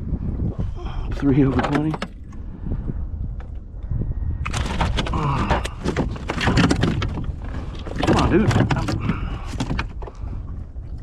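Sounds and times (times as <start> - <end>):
fish flopping against kayak: 4.4 - 11.0.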